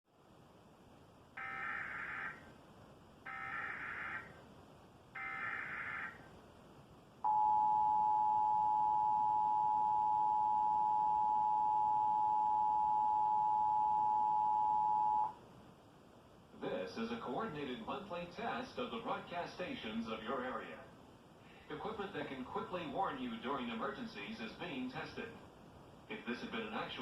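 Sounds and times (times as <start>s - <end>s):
two-tone attention signal: 7.3s - 15.4s.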